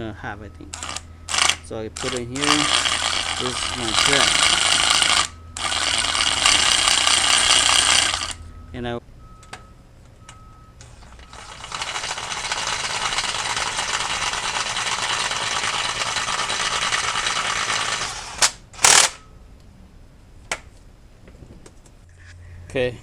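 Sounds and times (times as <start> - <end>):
power tool running: 0.7 - 8.5, 10.8 - 19.2.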